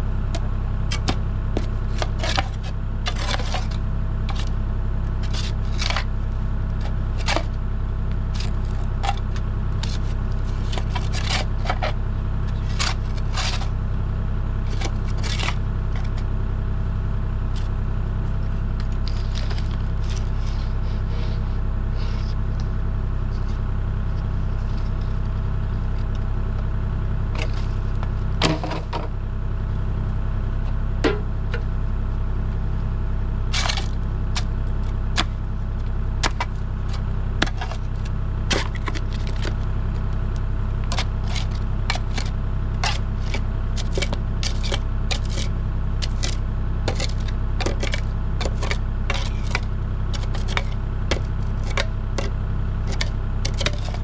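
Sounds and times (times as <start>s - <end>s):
heavy equipment engine running: 0.0s - 54.0s
knocks and scrapes: 0.3s - 4.6s, 5.2s - 6.1s, 6.8s - 7.5s, 8.3s - 13.7s, 14.7s - 16.2s, 27.4s - 29.2s, 33.5s - 34.5s, 36.2s - 39.6s, 40.8s - 54.0s.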